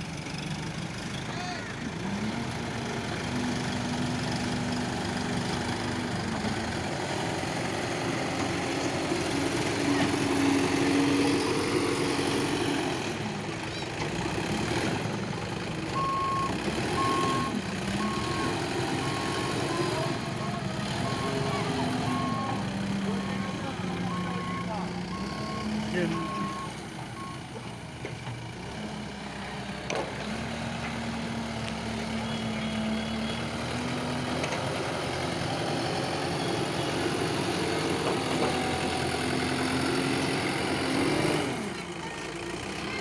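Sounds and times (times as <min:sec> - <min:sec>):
diesel engine revving: 0:00.0 - 0:43.0
reversing alarm beeping: 0:16.0 - 0:27.4.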